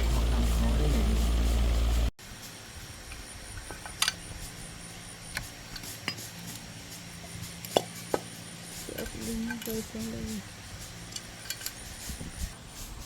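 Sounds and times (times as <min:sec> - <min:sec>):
metal tools clinking: 0:11.0 - 0:12.0.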